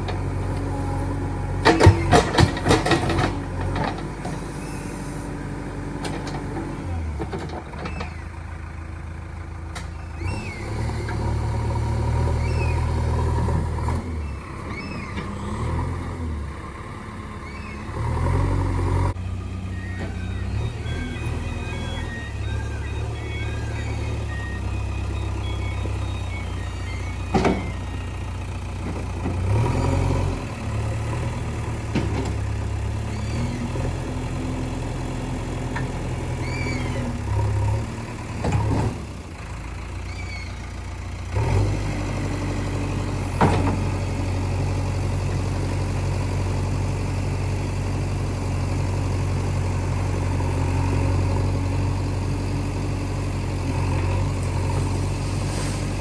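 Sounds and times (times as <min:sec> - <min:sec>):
diesel engine running: 0:00.0 - 0:56.0
machine clanks and knocks: 0:01.6 - 0:04.1.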